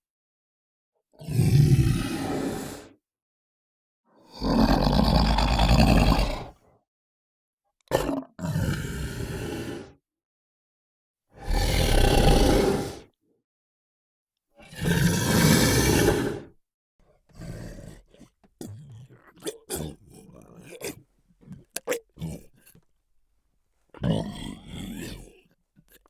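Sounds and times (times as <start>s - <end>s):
monster growling roars: 11.4s - 13.0s, 14.8s - 16.5s.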